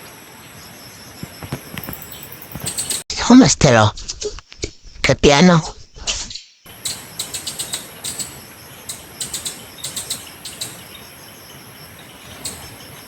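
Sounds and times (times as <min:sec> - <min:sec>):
insect drone: 0:00.0 - 0:03.0, 0:06.7 - 0:13.0
short sharp chirps: 0:06.7 - 0:11.0.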